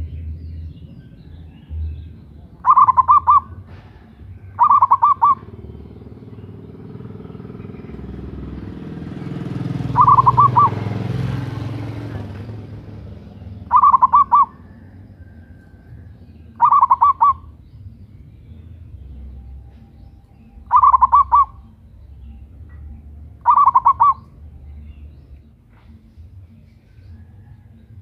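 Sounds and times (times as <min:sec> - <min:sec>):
dove cooing: 0:02.5 - 0:06.2, 0:07.3 - 0:17.6, 0:19.2 - 0:24.8.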